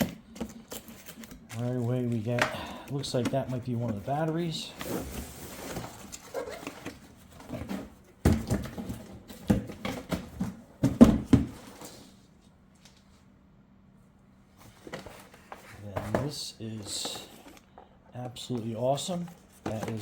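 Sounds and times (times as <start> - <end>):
faint hum: 0.0 - 20.0
knocks and taps of box contents: 7.6 - 11.7.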